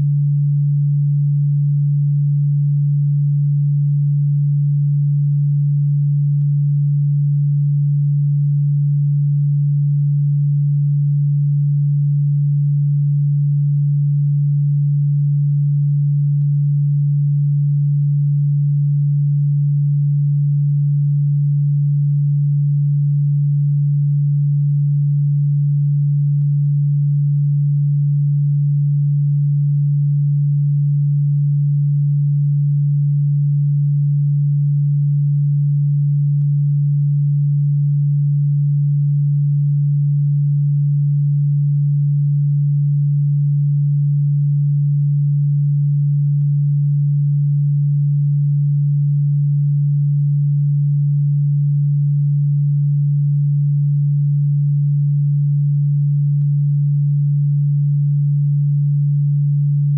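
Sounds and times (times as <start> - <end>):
low steady electronic tone: 0.0 - 59.9.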